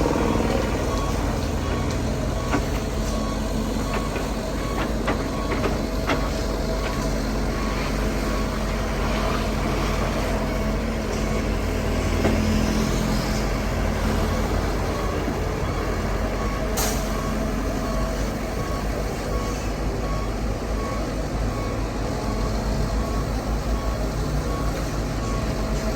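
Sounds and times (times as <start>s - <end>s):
heavy diesel engines running: 0.0s - 25.9s.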